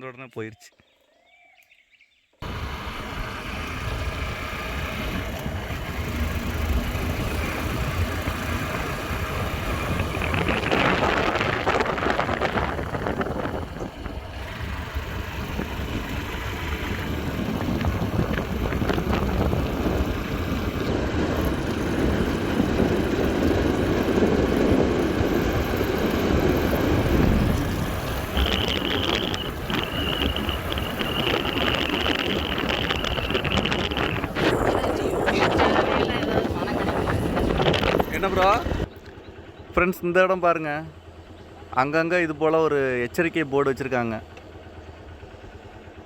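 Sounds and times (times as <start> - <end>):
wind buffeting microphone: 2.4 - 38.9
motorbike engine and road noise: 2.4 - 46.0
high-pitched whine: 16.2 - 38.9.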